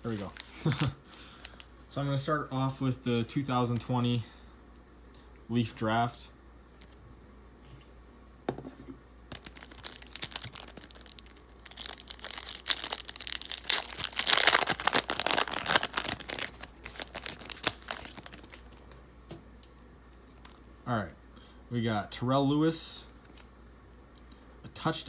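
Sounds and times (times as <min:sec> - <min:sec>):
wrapper tearing and crinkling: 0:00.1 - 0:01.0, 0:09.3 - 0:18.9.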